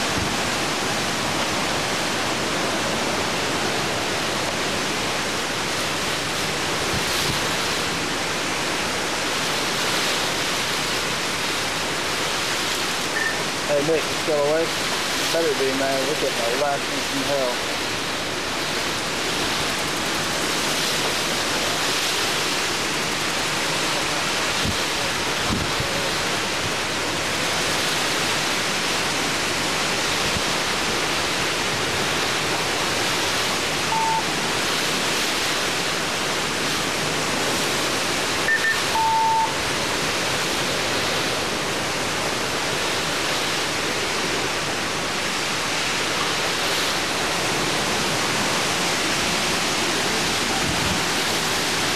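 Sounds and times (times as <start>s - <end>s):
wind and driving rain rushing: 0.0s - 51.9s
short beeps: 13.1s - 13.5s, 33.9s - 34.3s, 38.4s - 39.6s.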